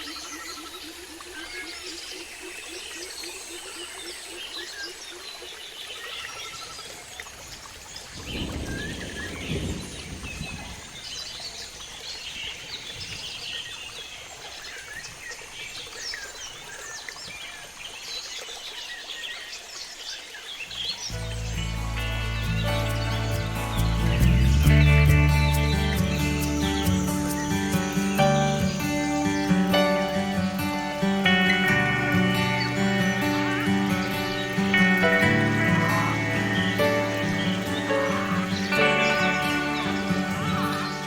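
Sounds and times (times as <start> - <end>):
water rushing: 0.0 - 41.0
birds chirping and calling: 20.6 - 41.0.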